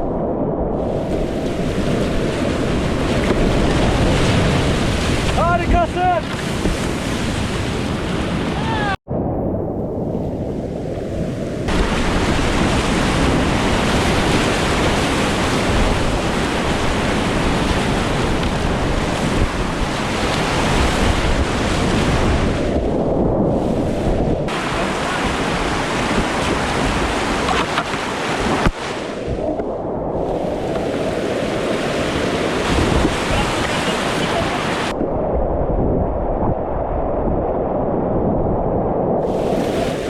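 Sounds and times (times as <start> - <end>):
wind buffeting microphone: 0.0 - 40.0
river water rushing: 24.5 - 29.2, 30.6 - 35.0.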